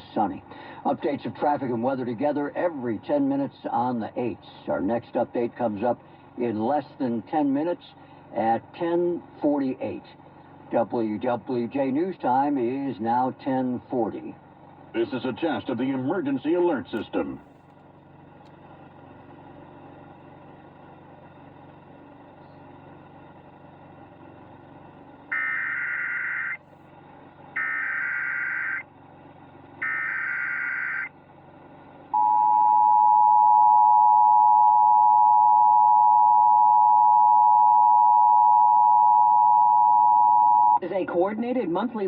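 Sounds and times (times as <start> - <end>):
faint hum: 31.8 - 40.9
two-tone attention signal: 32.2 - 40.8.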